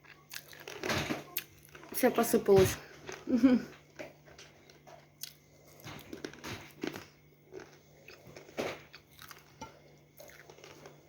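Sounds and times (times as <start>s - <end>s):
person biting and chewing: 0.1s - 1.8s, 4.7s - 11.0s
crisp crunches: 4.3s - 9.6s, 10.2s - 11.0s.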